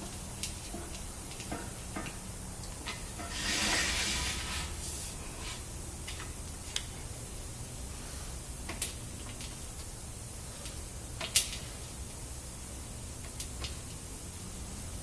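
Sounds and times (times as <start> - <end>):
steady low hum: 0.0 - 15.0
hiss: 3.2 - 5.7.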